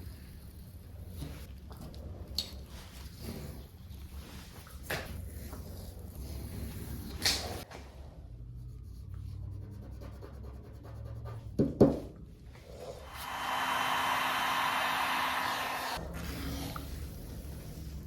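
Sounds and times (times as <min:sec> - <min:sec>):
rushing hiss of air: 0:13.0 - 0:16.0.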